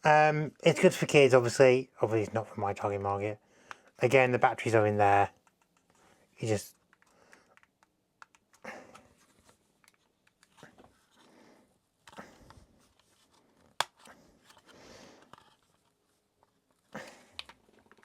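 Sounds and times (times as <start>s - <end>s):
plastic clicks and rustles: 5.3s - 6.1s, 6.7s - 11.3s, 12.0s - 18.0s.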